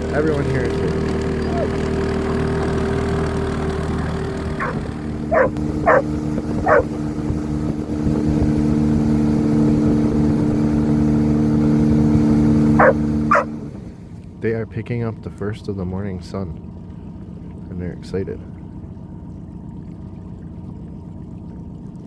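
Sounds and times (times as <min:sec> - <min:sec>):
boat motor running: 0:00.0 - 0:14.1
dog barking: 0:04.6 - 0:07.0, 0:12.8 - 0:13.5.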